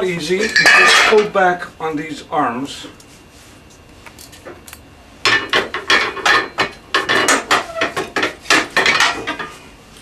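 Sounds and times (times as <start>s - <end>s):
metal clanks and knocks: 5.2s - 9.5s.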